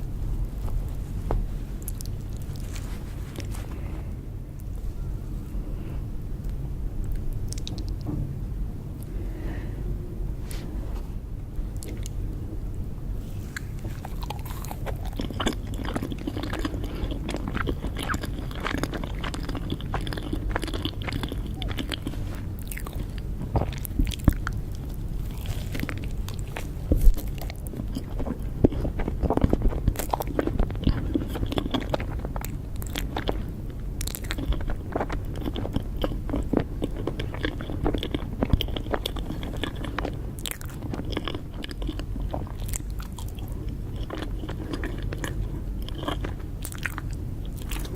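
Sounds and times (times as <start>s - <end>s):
crunchy cake bites and chewing: 13.4s - 47.9s.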